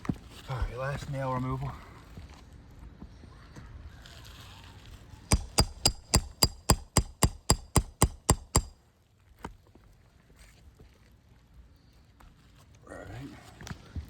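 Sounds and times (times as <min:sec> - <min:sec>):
hammer ringing on metal: 0:05.3 - 0:08.7.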